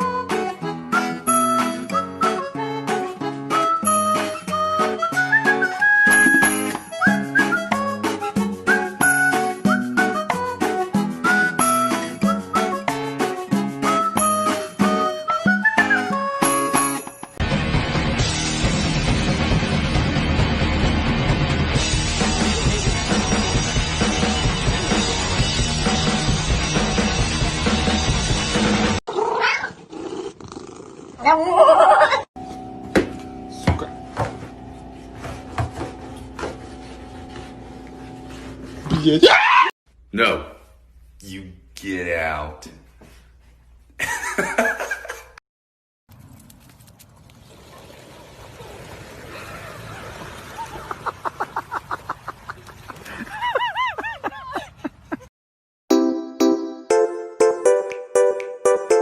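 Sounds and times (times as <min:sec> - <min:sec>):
cat meowing: 0:29.2 - 0:29.8
high-pitched laughter: 0:31.4 - 0:32.3, 0:49.4 - 0:55.3.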